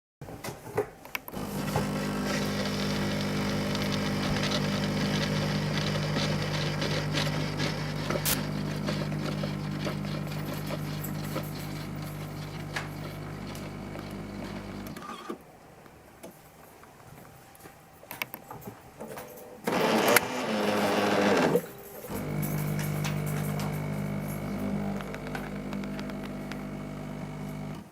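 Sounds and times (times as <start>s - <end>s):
coffee machine motor hum: 1.3s - 15.0s, 19.7s - 27.9s.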